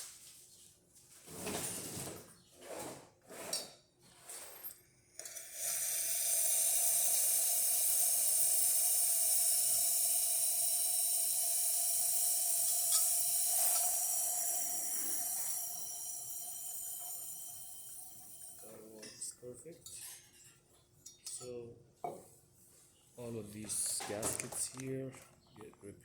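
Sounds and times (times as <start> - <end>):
steam wand hissing: 5.2 - 18.9.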